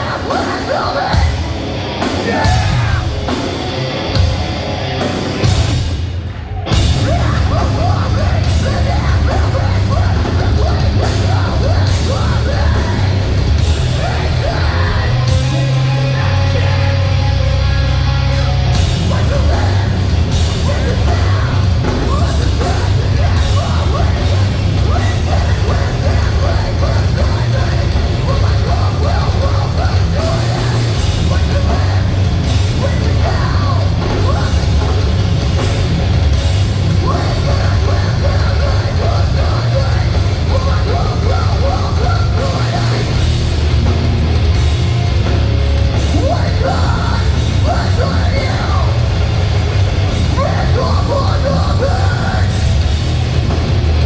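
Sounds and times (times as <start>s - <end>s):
bass guitar: 0.0s - 54.0s
distorted guitars: 0.0s - 54.0s
drums: 0.0s - 54.0s
person yelling vocals: 2.2s - 3.3s.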